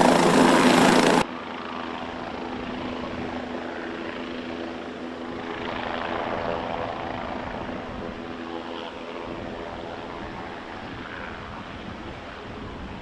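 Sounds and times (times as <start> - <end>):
helicopter rotor and turbine: 0.0 - 13.0.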